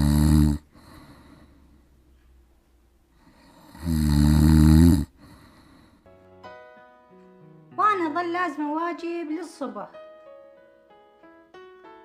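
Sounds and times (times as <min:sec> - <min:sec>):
man snoring loudly: 0:00.0 - 0:01.4, 0:03.3 - 0:05.7
breathing: 0:00.0 - 0:02.4, 0:03.1 - 0:04.1, 0:05.0 - 0:06.1.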